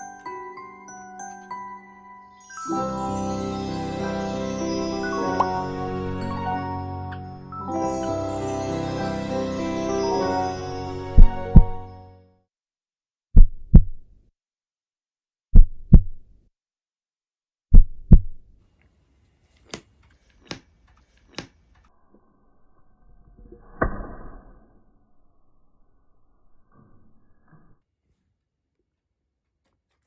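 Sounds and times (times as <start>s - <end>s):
heartbeat thumps: 13.4s - 14.0s, 15.6s - 16.2s.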